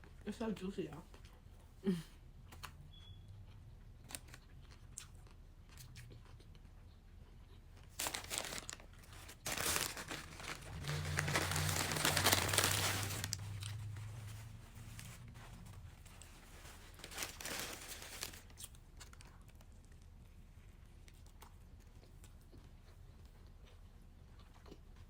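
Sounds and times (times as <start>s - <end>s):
paper wrapper crinkling and tearing: 7.8s - 19.7s.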